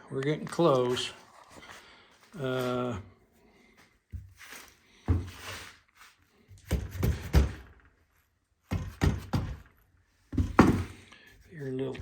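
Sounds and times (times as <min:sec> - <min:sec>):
dull wooden thunks: 0:10.3 - 0:11.0.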